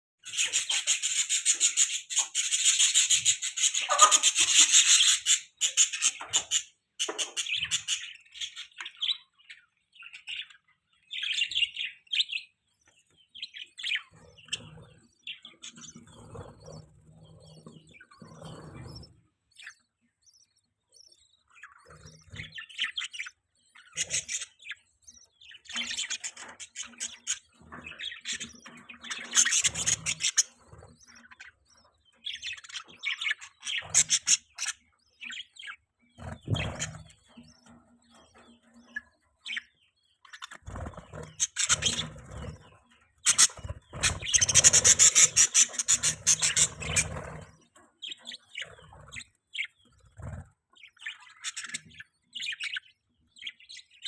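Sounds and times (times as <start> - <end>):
budgerigar chirping and warbling: 0.2 - 9.3, 21.6 - 24.9, 25.5 - 37.7, 38.3 - 53.9.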